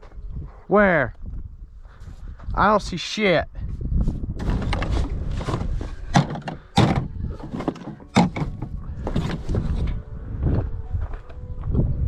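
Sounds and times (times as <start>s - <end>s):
rustling handling noise: 4.4s - 10.0s.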